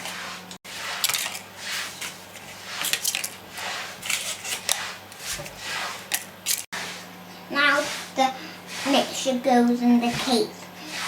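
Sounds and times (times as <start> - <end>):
paper cupcake cases rustling: 0.9 - 6.7.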